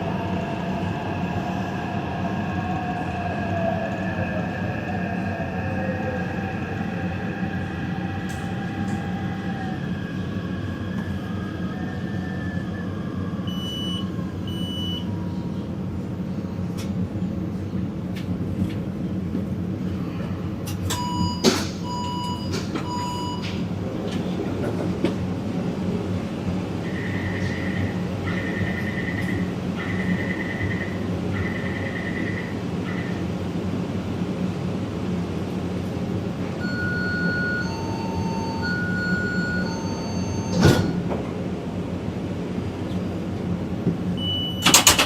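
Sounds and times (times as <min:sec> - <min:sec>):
train running with whine: 0:00.0 - 0:45.0
lower beeps: 0:13.4 - 0:15.1, 0:36.6 - 0:40.7.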